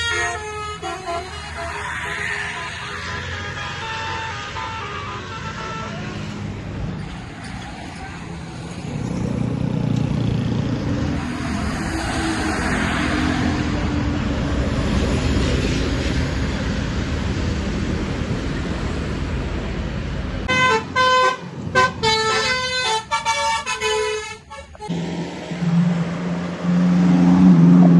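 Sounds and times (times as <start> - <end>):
musical bus horn tune: 0.0 - 6.4, 20.5 - 25.0
bus engine passing: 0.0 - 27.9
road noise: 0.0 - 27.9.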